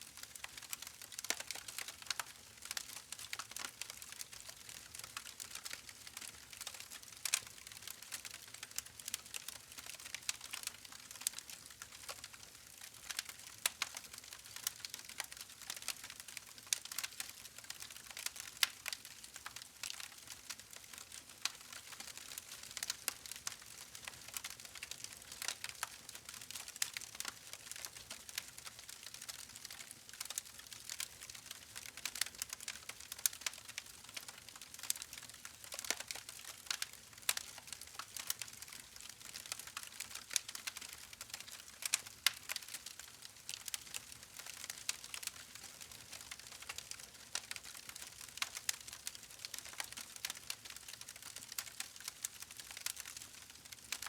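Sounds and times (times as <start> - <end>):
campfire crackling and popping: 0.2 - 54.0.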